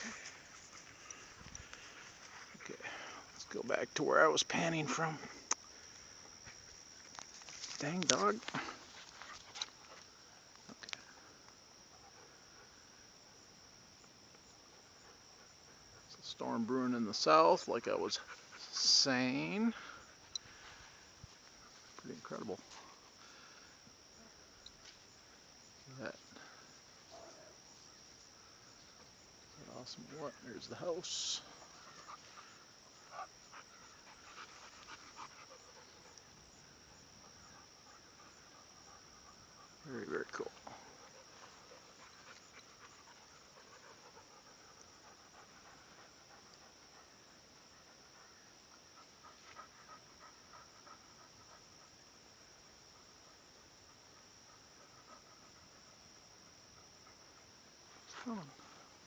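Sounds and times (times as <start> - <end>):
crickets chirring: 0.0 - 59.0
insects droning: 0.0 - 59.0
dog panting: 18.2 - 19.0, 31.5 - 36.4, 37.0 - 39.8, 40.6 - 52.1, 53.0 - 57.8.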